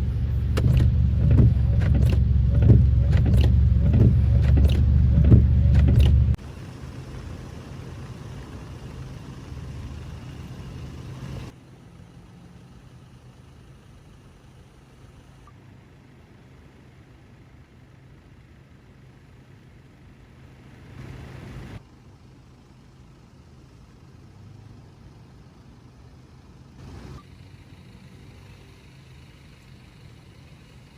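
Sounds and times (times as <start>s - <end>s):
vehicle engine humming: 0.0s - 30.9s.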